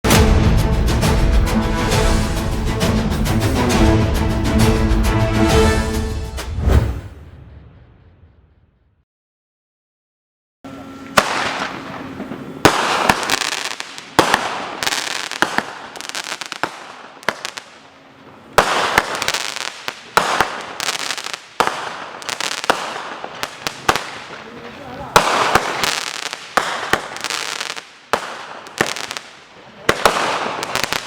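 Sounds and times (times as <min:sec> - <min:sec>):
fireworks banging: 0:11.1 - 0:31.0
fireworks crackling: 0:11.2 - 0:31.0.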